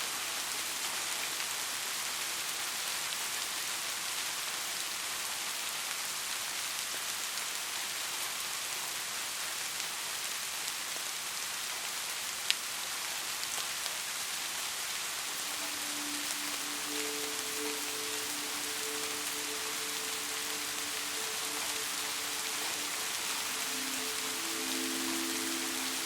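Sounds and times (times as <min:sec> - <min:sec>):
steady rain hiss: 0:00.0 - 0:26.0
raindrops ticking: 0:15.3 - 0:26.0.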